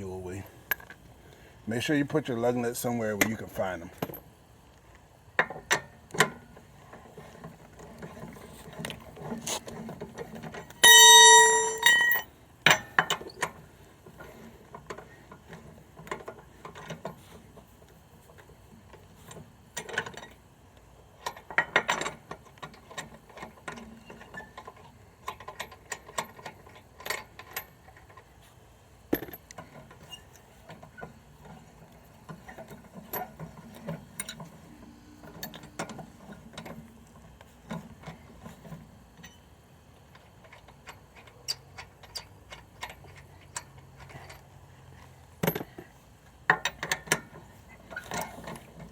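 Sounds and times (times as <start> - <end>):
tire iron clicking on lug nuts: 5.4 - 13.6, 40.1 - 48.9
ringing metal clang: 10.8 - 12.3.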